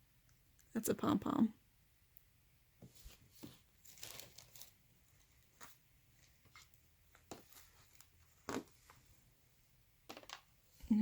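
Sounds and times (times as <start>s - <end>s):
hands rustling through yarn: 2.8s - 9.4s.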